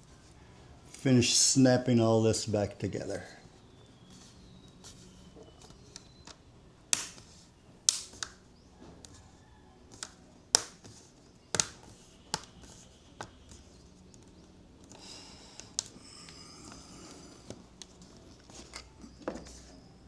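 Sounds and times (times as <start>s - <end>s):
plastic clips snapping into place: 5.6s - 9.2s, 9.9s - 13.3s.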